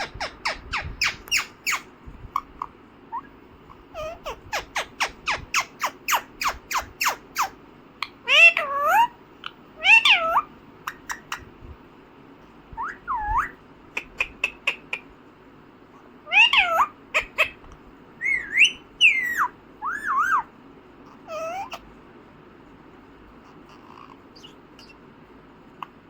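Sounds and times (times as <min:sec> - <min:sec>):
parakeet whistled calls: 0:00.0 - 0:01.9, 0:04.0 - 0:07.6, 0:09.8 - 0:11.4, 0:12.8 - 0:13.6, 0:16.3 - 0:17.6, 0:18.2 - 0:20.5, 0:24.4 - 0:25.0.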